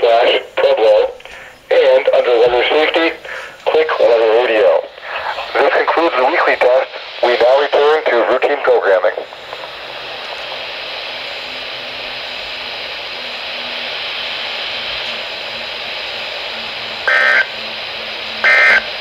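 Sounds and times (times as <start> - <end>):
radio static hiss: 0.0 - 19.0
loud digital data bursts: 17.0 - 17.6, 18.4 - 19.0.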